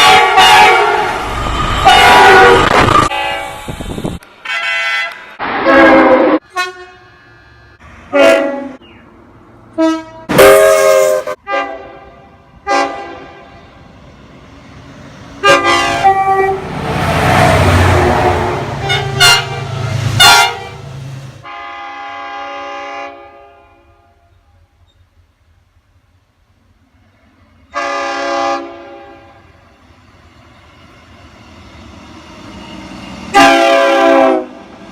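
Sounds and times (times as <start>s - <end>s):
train air horn blasts: 0.0s - 3.7s, 4.4s - 8.8s, 9.8s - 13.6s, 15.4s - 24.5s, 27.7s - 29.5s, 33.3s - 34.7s
passing train rumble: 0.0s - 34.9s.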